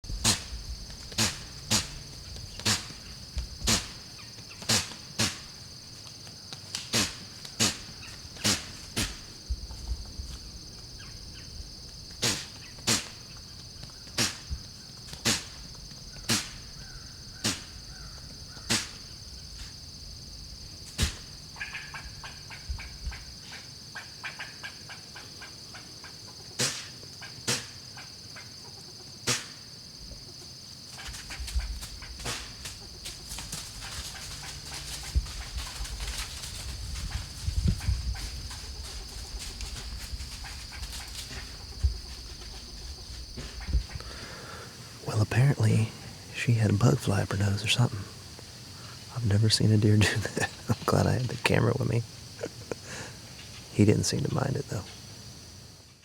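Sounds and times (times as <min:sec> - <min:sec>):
high insect chorus: 0:00.0 - 0:56.0
deer sneezing: 0:06.9 - 0:09.2, 0:12.2 - 0:13.2.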